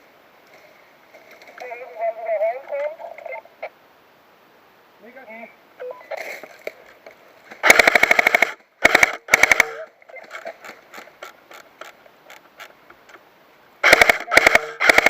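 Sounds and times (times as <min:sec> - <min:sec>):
airsoft gun firing bursts: 0:07.6 - 0:09.8, 0:13.8 - 0:15.0.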